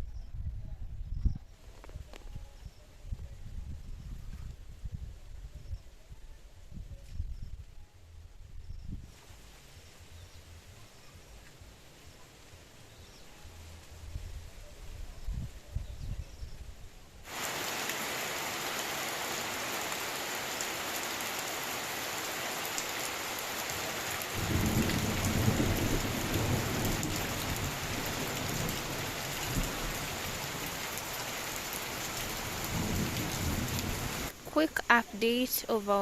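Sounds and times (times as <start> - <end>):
heavy rain falling: 17.3 - 36.0
thunder rumbling: 24.3 - 30.8, 32.2 - 34.4.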